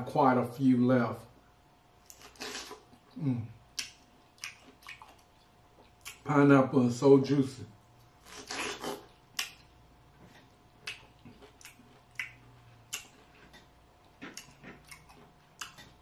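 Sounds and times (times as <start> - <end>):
person chewing wetly: 3.7 - 6.3, 8.0 - 16.0.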